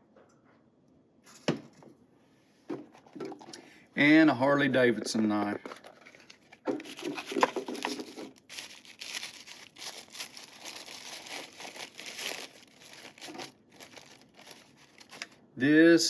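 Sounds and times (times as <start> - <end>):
crinkly wrapping rustling: 5.4 - 15.4.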